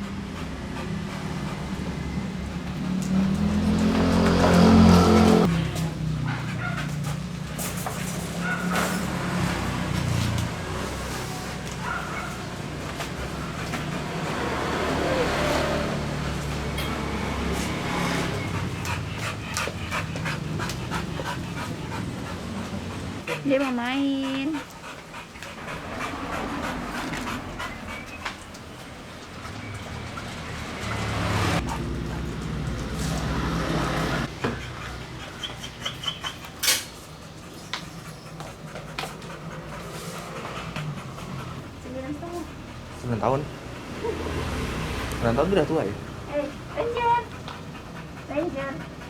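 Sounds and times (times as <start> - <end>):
dog panting: 0.0 - 33.5, 34.2 - 49.0.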